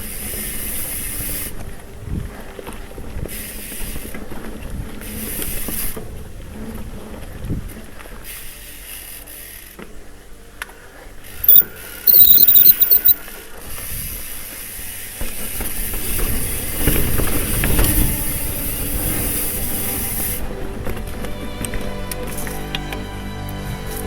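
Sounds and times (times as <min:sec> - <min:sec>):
disc brakes squealing: 0:11.5 - 0:13.2.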